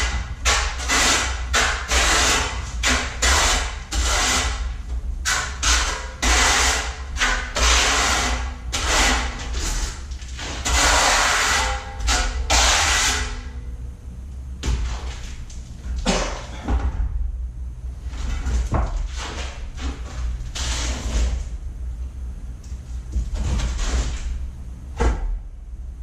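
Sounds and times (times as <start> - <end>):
trowel scraping tile: 0.0 - 4.6, 5.3 - 13.4, 19.1 - 21.4
steady low hum: 0.0 - 26.0.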